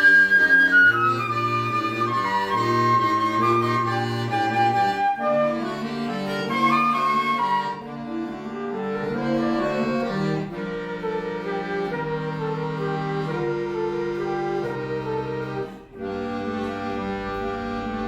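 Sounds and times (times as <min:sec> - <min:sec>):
button accordion playing: 0:00.0 - 0:18.0.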